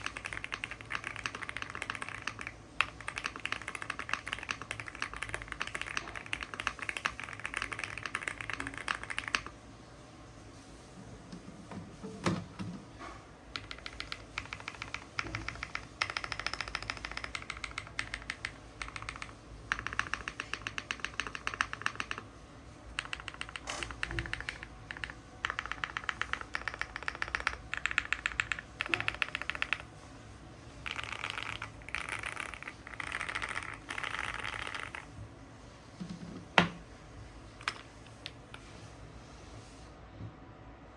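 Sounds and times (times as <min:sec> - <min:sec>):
mechanical keyboard typing: 0:00.0 - 0:09.5, 0:13.5 - 0:22.3, 0:22.9 - 0:29.9, 0:30.8 - 0:35.1.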